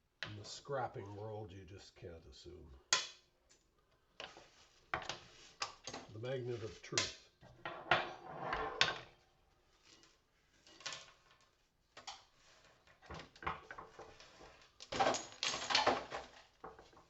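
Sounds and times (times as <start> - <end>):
metal parts clicking and clattering: 12.9 - 17.0.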